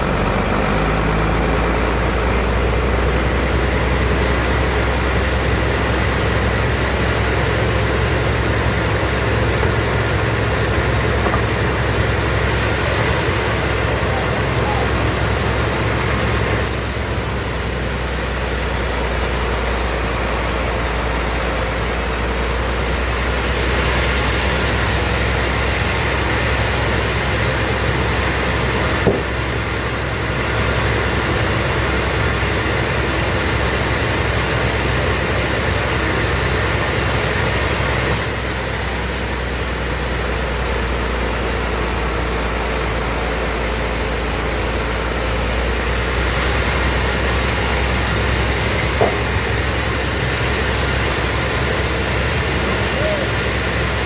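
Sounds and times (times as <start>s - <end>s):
sawmill machinery humming: 0.0s - 54.0s
high hiss: 16.5s - 22.6s, 38.1s - 45.5s.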